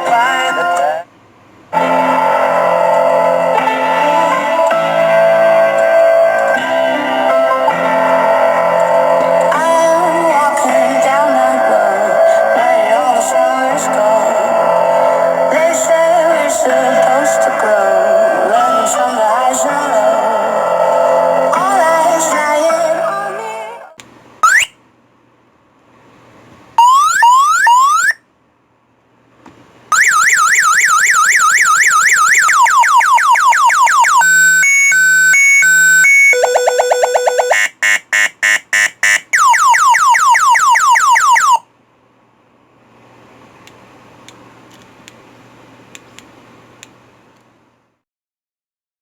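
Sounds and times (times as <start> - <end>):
motorcycle alarm siren: 1.8 - 23.4, 24.4 - 24.8, 26.8 - 28.2, 29.9 - 41.7.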